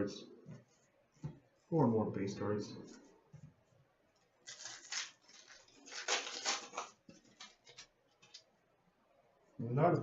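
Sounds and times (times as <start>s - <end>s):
foil pack tearing: 4.4s - 8.4s.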